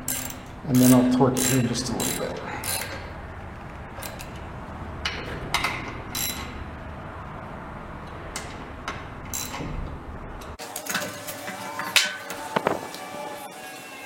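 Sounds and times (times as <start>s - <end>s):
socket ratchet clicking: 0.0s - 3.0s.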